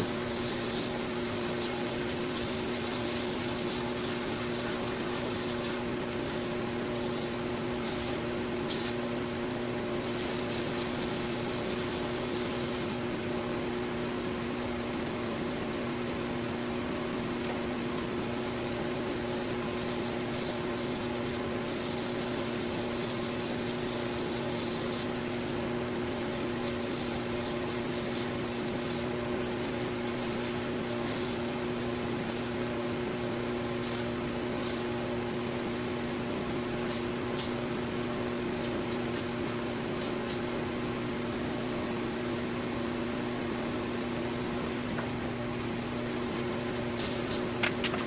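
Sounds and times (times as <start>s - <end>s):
steel hissing on abrasive belt: 0.0s - 9.0s, 10.0s - 13.0s, 18.3s - 32.6s, 33.7s - 34.9s, 46.8s - 48.0s.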